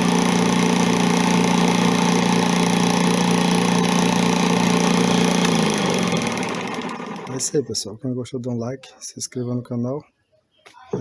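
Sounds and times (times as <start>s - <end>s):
motor driving a drum sander: 0.0s - 7.6s.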